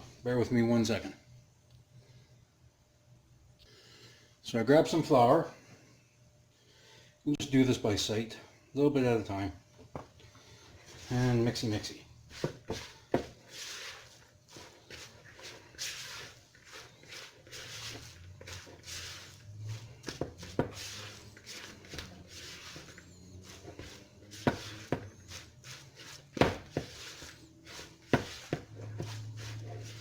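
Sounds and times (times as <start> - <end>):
paste scraping in a bowl: 10.8 - 30.0.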